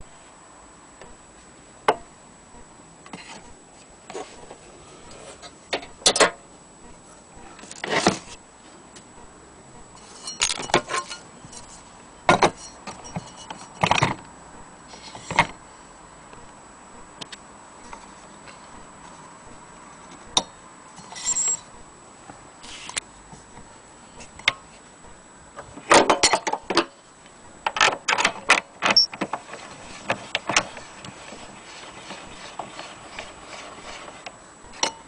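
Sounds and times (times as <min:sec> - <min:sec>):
gramophone being handled: 0:10.0 - 0:14.1.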